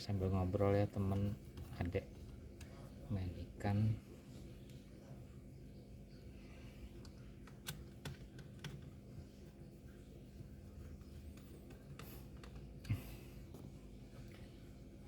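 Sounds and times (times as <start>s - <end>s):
low steady hum: 0.0s - 15.0s
clicks and taps on laptop: 7.1s - 9.0s.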